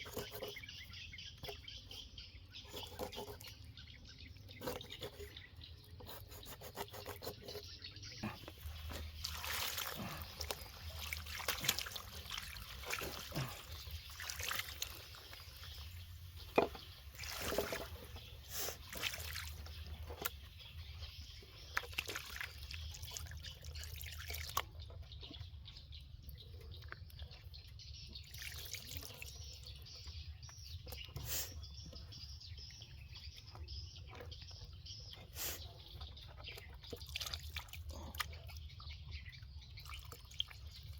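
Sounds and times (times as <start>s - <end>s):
water trickling and dripping: 8.4s - 20.4s, 21.6s - 24.8s, 28.2s - 29.9s.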